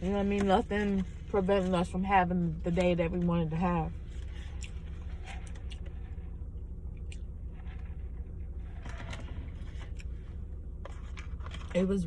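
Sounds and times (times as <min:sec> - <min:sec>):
steady low hum: 0:00.0 - 0:12.0
faint eating noises: 0:04.0 - 0:12.0.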